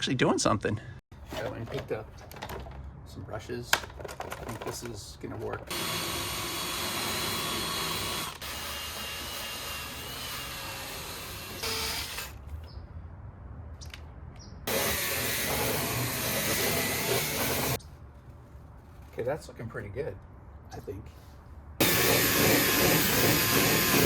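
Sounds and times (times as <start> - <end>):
drill spinning brush on plastic: 5.4 - 12.4, 14.7 - 17.8, 21.8 - 24.0.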